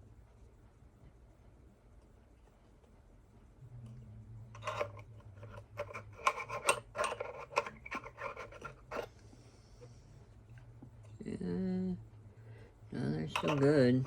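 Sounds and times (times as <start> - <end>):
steady low hum: 0.0 - 14.0
hands handling small parts: 4.6 - 9.2.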